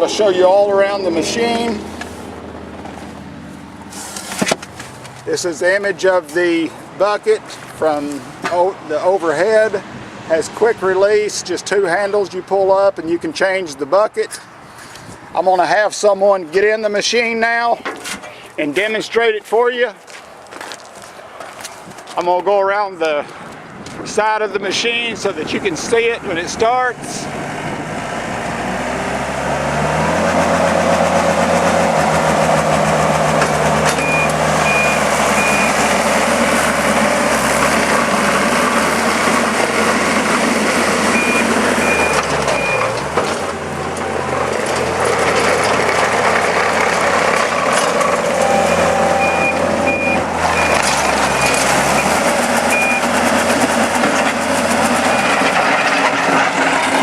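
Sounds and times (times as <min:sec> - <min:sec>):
diesel engine revving: 0:00.0 - 0:11.6, 0:24.8 - 0:57.0
backup alarm beeping: 0:34.0 - 0:35.9, 0:41.1 - 0:43.0, 0:48.4 - 0:53.1, 0:55.0 - 0:55.5.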